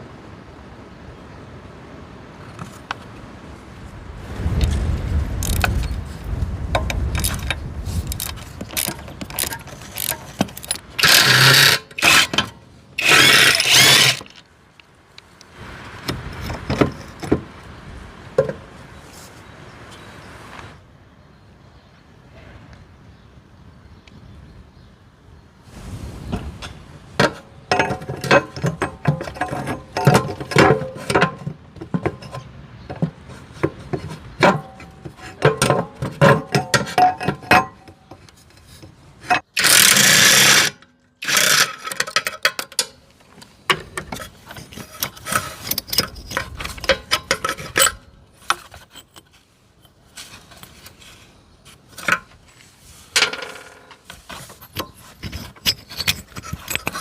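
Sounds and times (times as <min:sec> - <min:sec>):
metal tools clinking and scraping: 0:06.8 - 0:14.4, 0:27.2 - 0:57.0
loud hiss: 0:25.6 - 0:27.2.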